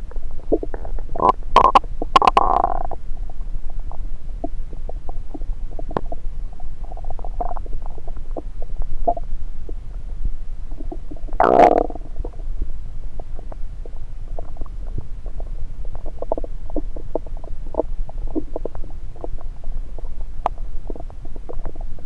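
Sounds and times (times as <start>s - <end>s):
stomach gurgling through stethoscope: 0.4s - 9.9s, 10.7s - 12.4s, 13.3s - 22.0s
small pops and bubbling clicks: 0.5s - 3.0s, 4.4s - 6.2s, 10.8s - 12.4s.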